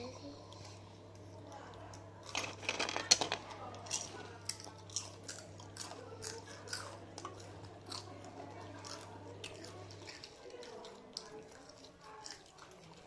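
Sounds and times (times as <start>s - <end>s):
steady low hum: 0.0s - 13.0s
chewing crunchy snacks: 0.5s - 13.0s.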